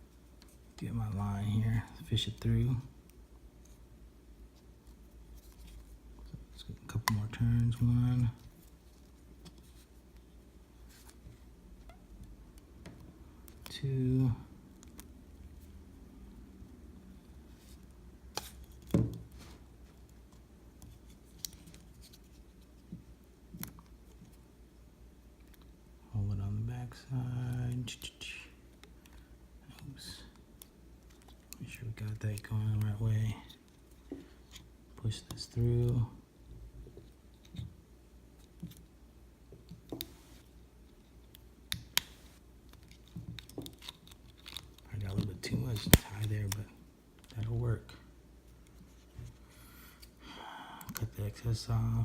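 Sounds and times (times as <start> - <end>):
soft rustle of hands: 39.9 - 41.3.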